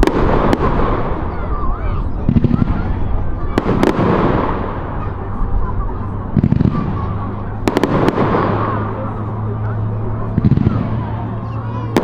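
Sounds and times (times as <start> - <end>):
firework cracks: 0.0 - 9.6
firework boom: 0.0 - 11.2
crowd murmur: 0.0 - 12.0.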